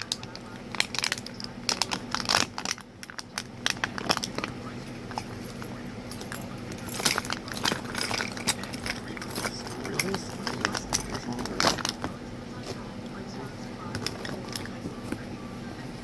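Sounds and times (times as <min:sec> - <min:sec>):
steady low hum: 0:00.0 - 0:16.0
objects clicking and clinking: 0:05.1 - 0:12.1.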